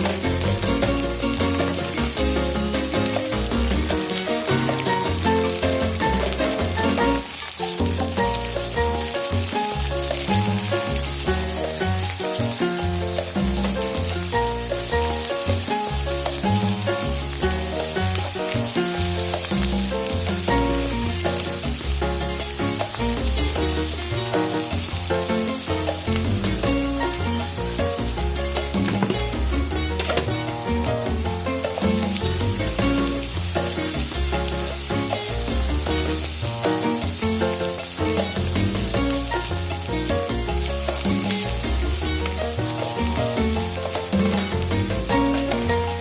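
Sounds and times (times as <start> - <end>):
background music with bass line: 0.0 - 46.0
food sizzling in hot oil: 0.0 - 46.0.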